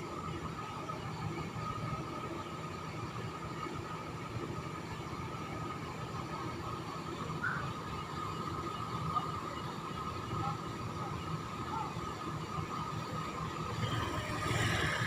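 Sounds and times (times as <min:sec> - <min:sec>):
steady high hum: 0:00.0 - 0:15.0
bus engine running: 0:08.4 - 0:15.0.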